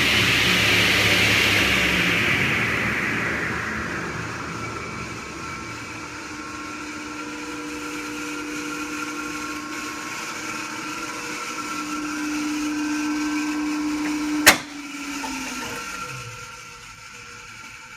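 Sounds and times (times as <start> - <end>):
table saw motor humming: 0.0 - 17.9.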